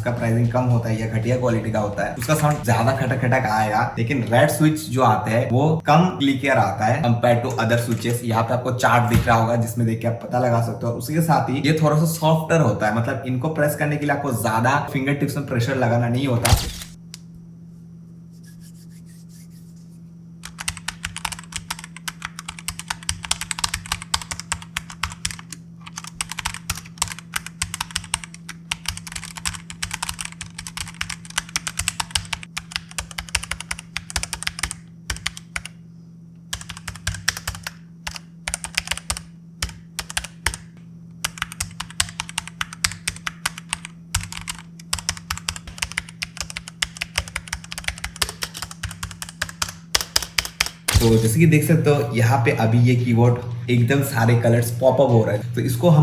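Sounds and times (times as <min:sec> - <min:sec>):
low hum: 0:00.0 - 0:09.8, 0:50.9 - 0:56.0
mechanical keyboard typing: 0:02.1 - 0:02.9, 0:20.4 - 0:35.8, 0:36.5 - 0:51.2.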